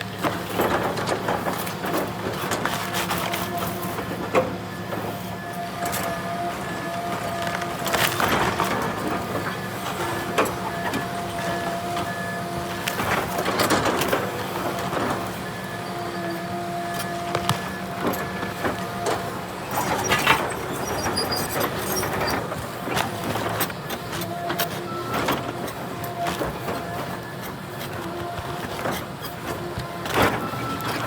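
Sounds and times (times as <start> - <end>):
excavator engine and hydraulics whine: 0.0 - 31.0
stump shear cracking wood: 7.1 - 9.3, 17.0 - 18.9.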